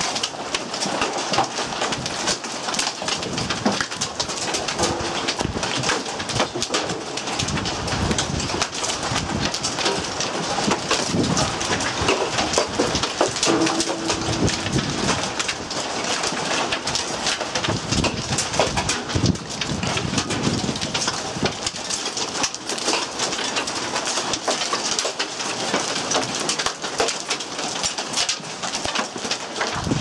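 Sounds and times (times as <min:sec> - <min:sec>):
hail and heavy rain pelting: 0:00.0 - 0:30.0.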